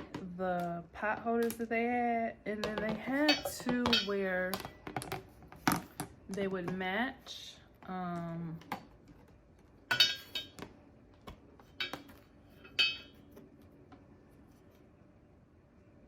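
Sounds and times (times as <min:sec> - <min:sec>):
hard objects clinking and knocking: 0:02.6 - 0:06.2, 0:09.9 - 0:10.7, 0:11.7 - 0:13.3.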